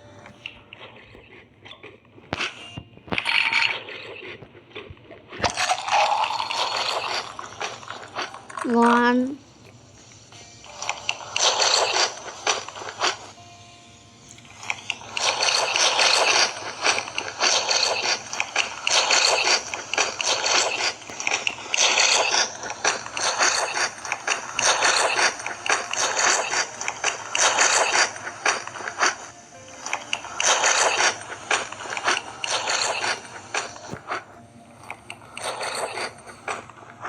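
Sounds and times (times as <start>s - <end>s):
wet chewing and slurping: 0.2s - 8.9s, 10.7s - 13.4s, 14.3s - 37.0s.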